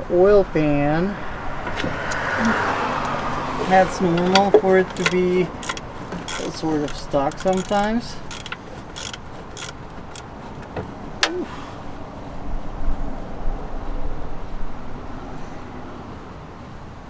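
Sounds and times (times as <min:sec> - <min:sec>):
wrench clicking: 0:01.7 - 0:11.5.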